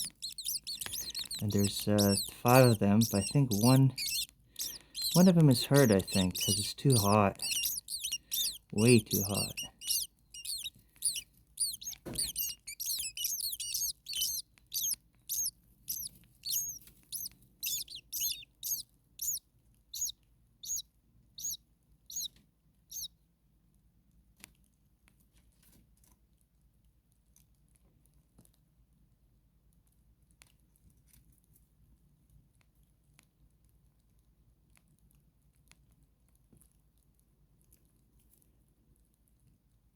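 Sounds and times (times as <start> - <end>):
starlings chirping: 0.0 - 19.4, 20.0 - 20.8, 21.4 - 22.3
faint ticks and rustles: 0.0 - 20.8, 23.7 - 28.9, 29.6 - 39.9.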